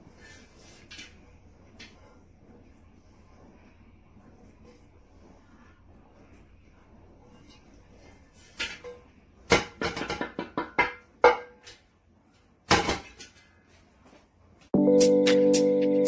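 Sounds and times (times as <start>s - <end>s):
hard objects clinking and knocking: 8.6s - 11.7s.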